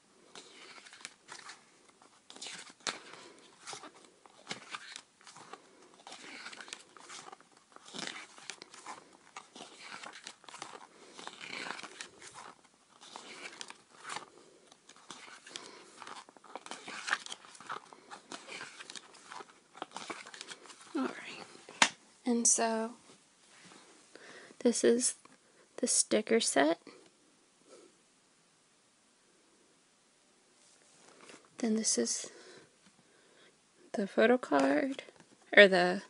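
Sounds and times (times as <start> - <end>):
packaging crinkling and rustling: 0.4 - 22.0.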